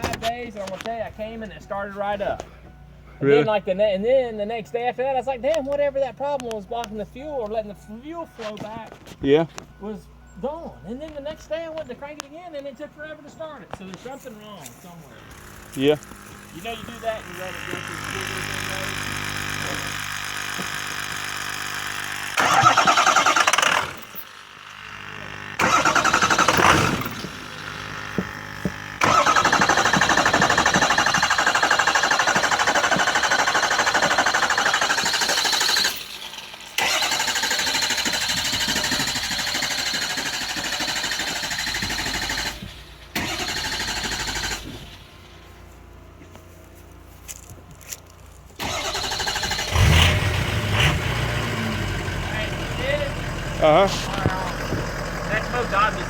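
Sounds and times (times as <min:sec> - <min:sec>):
starter cranking engine: 0:15.2 - 0:45.5, 0:47.9 - 0:56.0.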